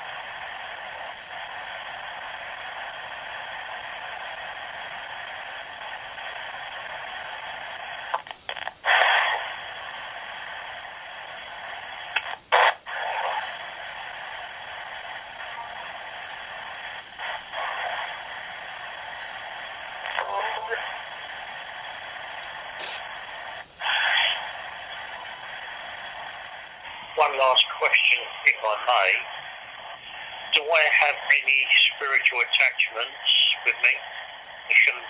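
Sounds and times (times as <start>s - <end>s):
white noise hissing: 0.0s - 35.0s
short noise bursts: 7.5s - 27.3s.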